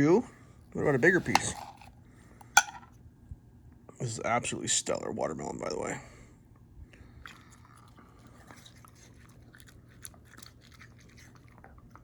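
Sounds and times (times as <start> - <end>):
dog chewing and crunching: 7.1 - 12.0.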